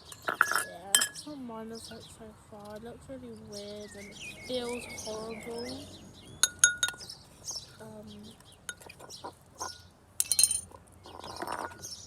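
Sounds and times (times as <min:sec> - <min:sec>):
small hard objects clinking: 0:00.0 - 0:01.2, 0:06.4 - 0:07.1, 0:08.7 - 0:12.0
birds chirping: 0:00.0 - 0:12.0.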